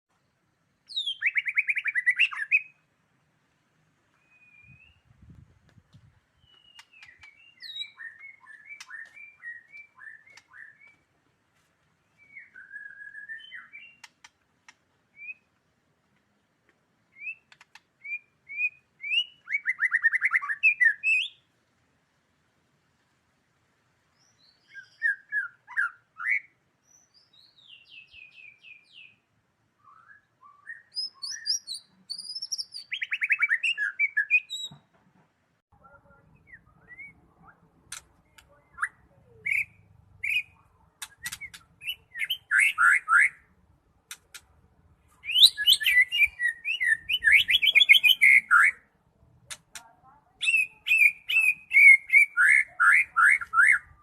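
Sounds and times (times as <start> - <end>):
bird singing whistles and trills: 0.8 - 2.8, 4.2 - 5.1, 6.4 - 11.0, 12.1 - 14.1, 15.1 - 15.5, 17.1 - 21.4, 24.2 - 29.2, 29.8 - 34.8, 36.4 - 37.7, 38.4 - 43.5, 45.2 - 48.9, 50.4 - 54.0
bird clicking ticks: 14.0 - 14.8, 44.1 - 44.5, 49.5 - 49.9.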